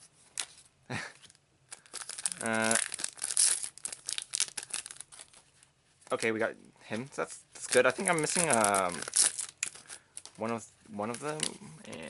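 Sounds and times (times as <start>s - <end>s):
foil wrappers crinkling and tearing: 1.7s - 6.4s, 7.6s - 11.6s.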